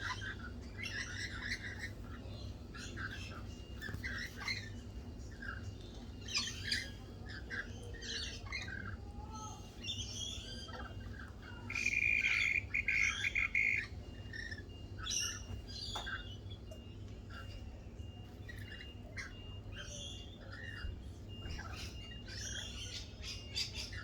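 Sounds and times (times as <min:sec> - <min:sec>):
buzzy bird chattering call: 0:00.0 - 0:16.0
small birds chirping: 0:00.0 - 0:24.0.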